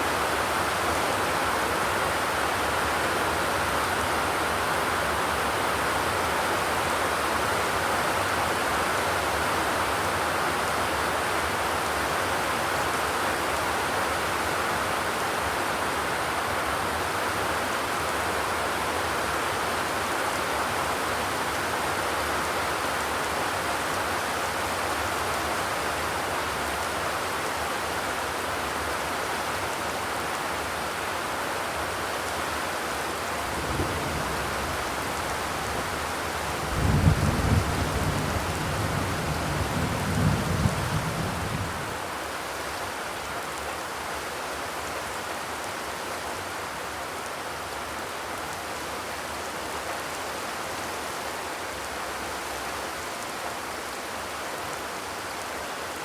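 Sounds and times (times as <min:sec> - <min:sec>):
rain on a metal roof: 0:00.0 - 0:56.0.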